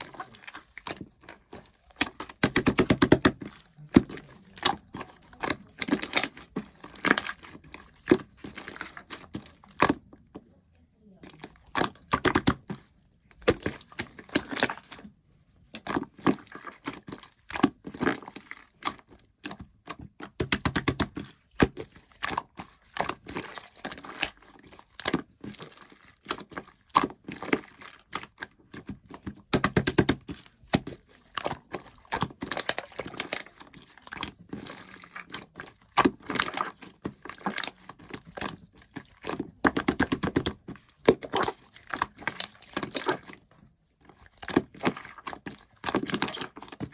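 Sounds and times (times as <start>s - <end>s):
slime crackling and popping: 1.9s - 4.0s.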